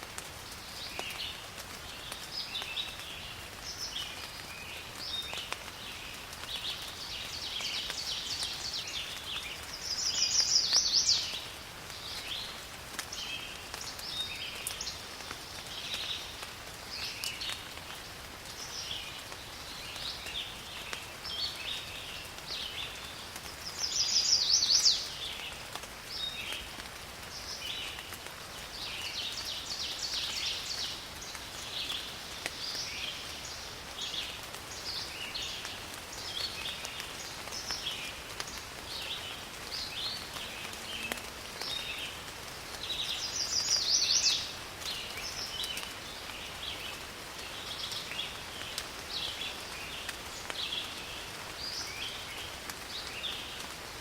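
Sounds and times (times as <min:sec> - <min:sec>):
steady rain in a forest: 0:00.0 - 0:54.0
birds chirping: 0:05.0 - 0:17.6, 0:19.9 - 0:25.5, 0:42.8 - 0:53.6.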